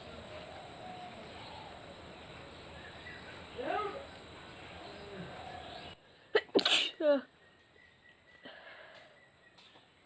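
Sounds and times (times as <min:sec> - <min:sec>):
woman sneezing: 0:06.6 - 0:07.1.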